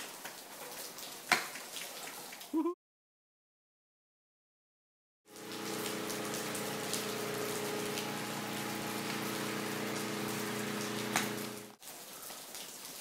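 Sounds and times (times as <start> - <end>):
rain falling: 0.0 - 2.5, 5.3 - 13.0
low hum: 5.3 - 11.8.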